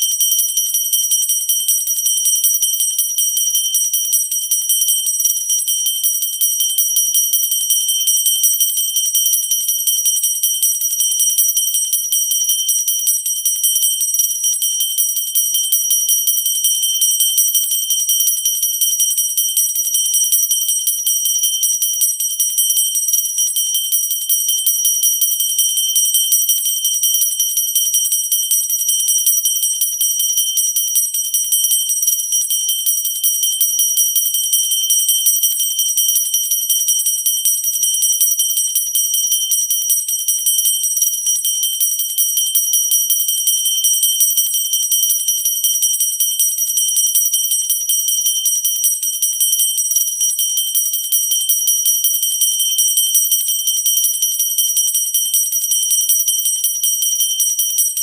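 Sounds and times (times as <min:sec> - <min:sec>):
hand bell ringing rapidly: 0:00.0 - 0:58.0.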